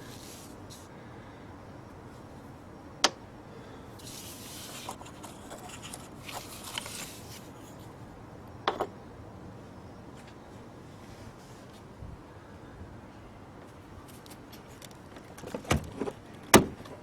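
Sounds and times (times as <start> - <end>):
rubbing and scraping: 4.0 - 8.0.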